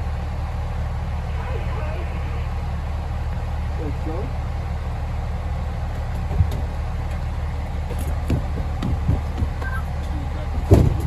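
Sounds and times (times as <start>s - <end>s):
freight train rumbling past: 0.0s - 11.0s
knocks from train cars: 5.4s - 11.0s.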